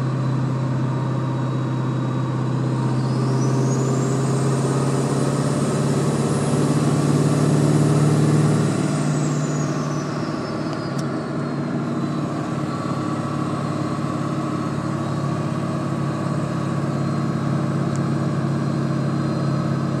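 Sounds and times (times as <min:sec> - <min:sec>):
high whine: 0:00.0 - 0:19.8
engine low hum: 0:00.0 - 0:20.0.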